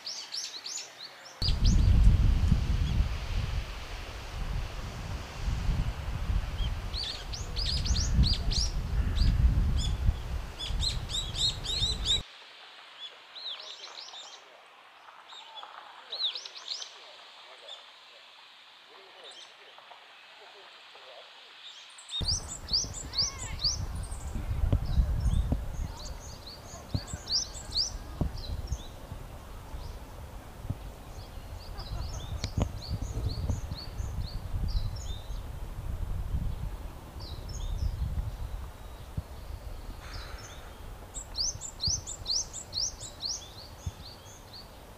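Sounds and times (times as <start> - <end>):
birds chirping: 0.0 - 2.2, 6.5 - 12.2, 21.6 - 35.7, 36.4 - 44.9
wind rumbling on microphone: 1.4 - 12.2, 22.2 - 44.9.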